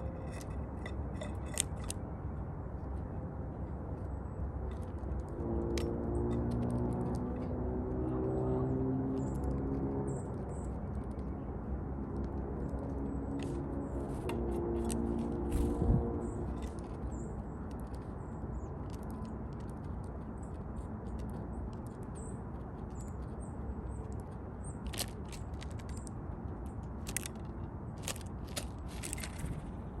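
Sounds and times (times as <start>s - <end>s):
woodpecker pecking at feeder: 0.0s - 2.0s.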